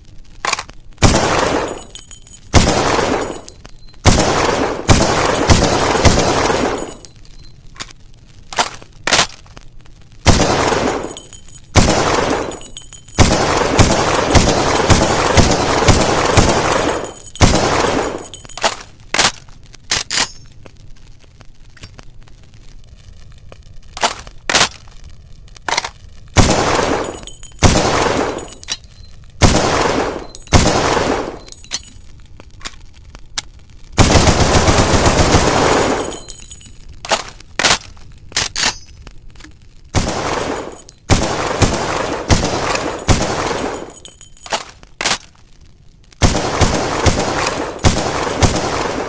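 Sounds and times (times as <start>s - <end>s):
rifle single shots: 1.0s - 7.0s, 10.3s - 18.4s, 26.4s - 28.7s, 29.4s - 31.6s, 40.0s - 44.1s, 46.2s - 49.0s
automatic gunfire bursts: 13.2s - 18.3s, 26.4s - 28.6s, 29.4s - 31.4s, 34.0s - 36.2s, 40.0s - 44.0s, 46.2s - 49.0s.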